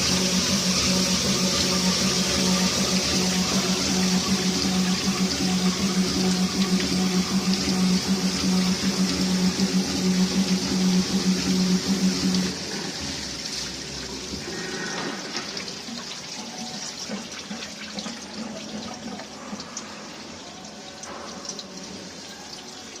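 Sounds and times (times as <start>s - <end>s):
liquid running and splashing: 0.0s - 23.0s
small drips: 0.0s - 23.0s.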